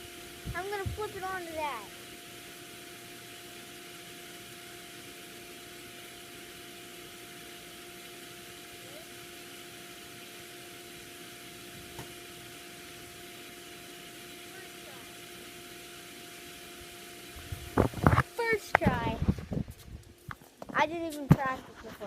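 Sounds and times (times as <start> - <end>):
steady hiss: 0.0 - 21.7.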